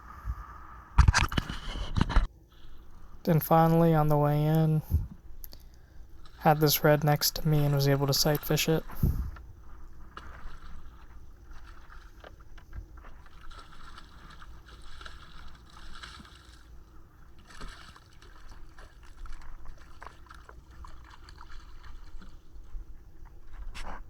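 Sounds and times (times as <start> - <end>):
water lapping around a kayak: 0.0 - 24.0.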